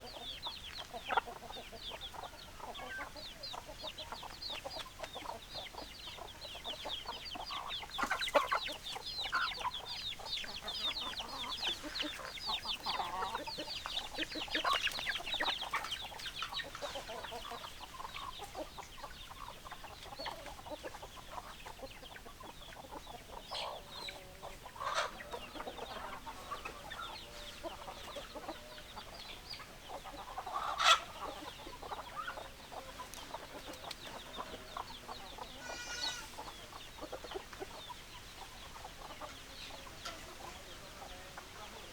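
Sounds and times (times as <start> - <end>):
chickens clucking: 0.0 - 41.9.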